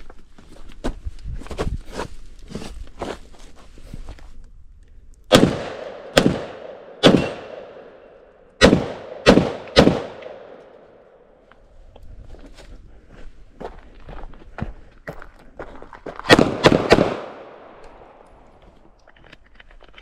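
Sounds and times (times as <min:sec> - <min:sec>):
pistol shots echoing: 0:05.3 - 0:11.2, 0:16.3 - 0:18.3.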